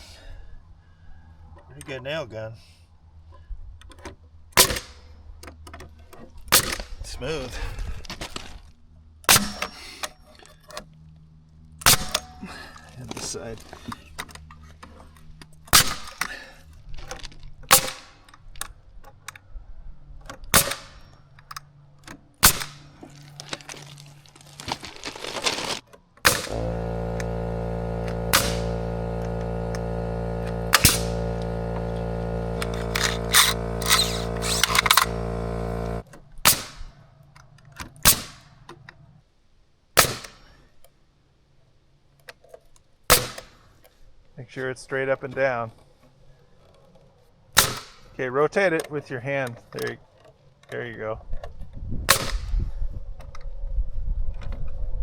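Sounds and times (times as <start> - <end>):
nail gun firing: 4.6 - 5.1, 6.6 - 7.0, 9.3 - 9.9, 11.8 - 12.5, 15.7 - 16.4, 17.7 - 18.3, 20.5 - 21.1, 22.4 - 23.0, 26.2 - 36.9, 38.0 - 38.5, 40.0 - 40.5, 43.1 - 43.6, 47.6 - 48.1, 52.1 - 52.6
motor hum: 10.9 - 18.2, 22.8 - 36.5.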